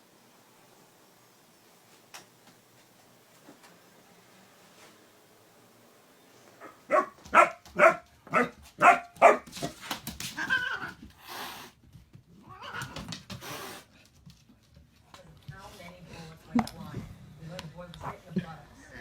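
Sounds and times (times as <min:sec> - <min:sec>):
dog barking: 0:06.6 - 0:09.6.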